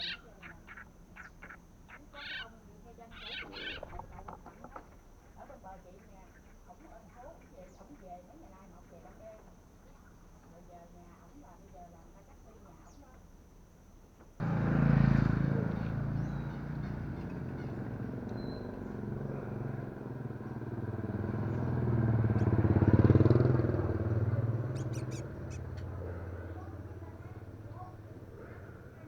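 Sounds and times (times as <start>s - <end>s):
engine running: 14.4s - 29.0s.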